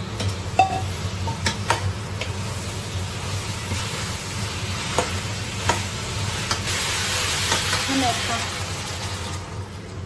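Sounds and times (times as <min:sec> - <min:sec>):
vegetables sizzling in hot oil: 0:00.0 - 0:10.0.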